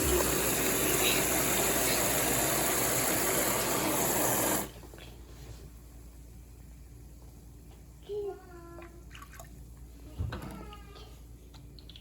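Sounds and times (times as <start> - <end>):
tap water running: 0.0 - 4.8.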